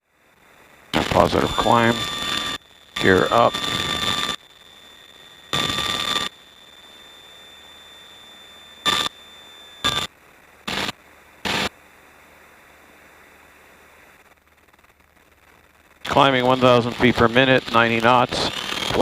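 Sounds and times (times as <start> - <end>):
radio static bursts: 0.9 - 11.7, 14.2 - 19.0
faint hiss: 10.1 - 18.9.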